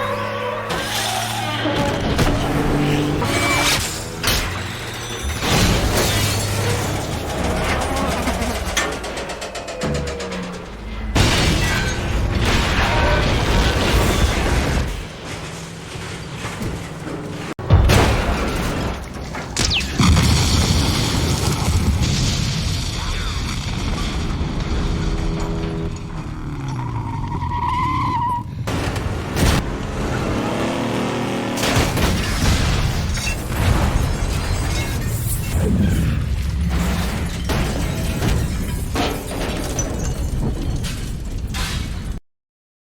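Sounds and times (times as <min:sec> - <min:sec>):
tire squeal: 0:00.0 - 0:05.4, 0:25.2 - 0:28.7
truck engine revving: 0:00.0 - 0:11.2, 0:24.2 - 0:32.3
truck crashing through building: 0:00.7 - 0:26.2, 0:28.7 - 0:29.8, 0:30.4 - 0:42.2
debris falling: 0:04.5 - 0:26.2.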